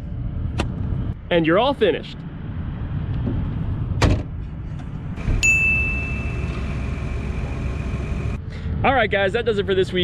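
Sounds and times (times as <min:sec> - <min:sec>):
low steady rumble: 0:00.0 - 0:10.0
high-pitched ding-like tone: 0:05.4 - 0:06.6.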